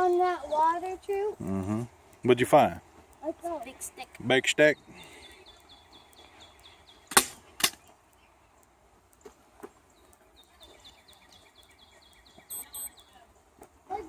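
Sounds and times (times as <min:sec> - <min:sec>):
high chirping: 0:10.0 - 0:13.3.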